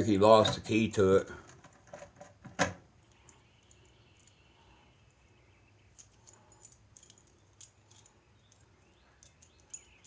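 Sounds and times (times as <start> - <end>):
faint clicks of small items handled: 5.9 - 10.0.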